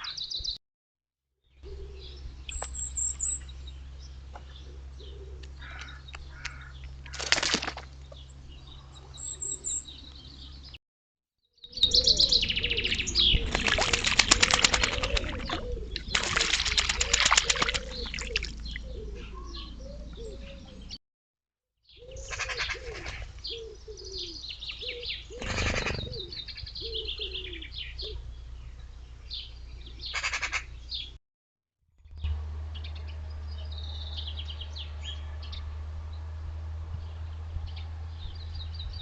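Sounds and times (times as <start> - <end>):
small birds chirping: 1.5 - 10.8, 11.6 - 21.0, 21.9 - 31.2, 32.1 - 36.3, 36.9 - 39.0
pigeons cooing: 1.6 - 2.4, 4.5 - 6.7, 11.8 - 21.0, 21.9 - 28.4.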